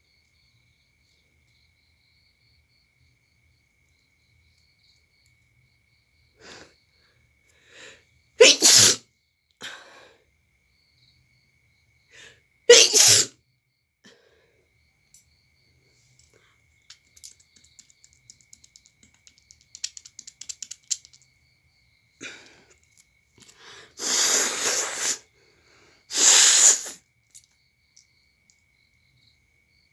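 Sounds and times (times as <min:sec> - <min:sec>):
woman sneezing: 0:08.4 - 0:09.0, 0:12.7 - 0:13.3, 0:24.0 - 0:25.2, 0:26.1 - 0:27.0
faint breaths: 0:22.2 - 0:26.1.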